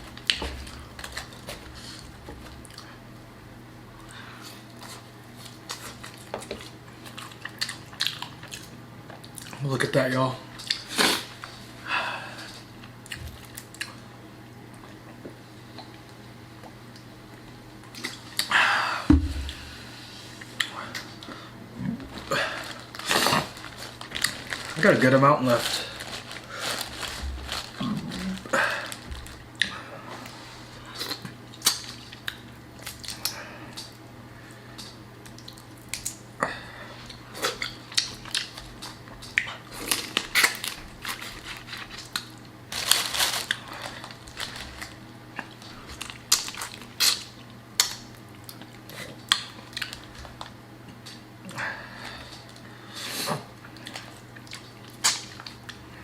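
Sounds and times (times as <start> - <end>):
chewing: 4.4 - 9.6, 34.7 - 36.2, 37.0 - 40.6, 53.6 - 55.9.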